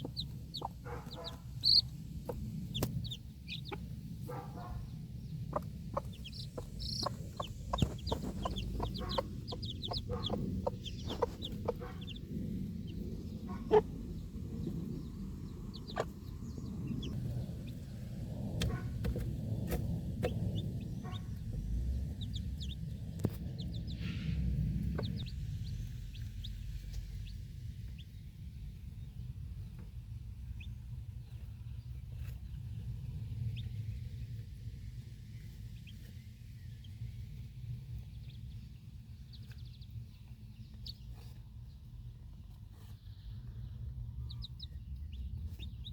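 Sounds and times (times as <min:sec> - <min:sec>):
hen clucking softly: 0:00.0 - 0:14.1, 0:15.7 - 0:17.2
chicks peeping: 0:00.0 - 0:18.0, 0:18.6 - 0:34.0, 0:36.8 - 0:45.9
low rumble: 0:00.0 - 0:45.9.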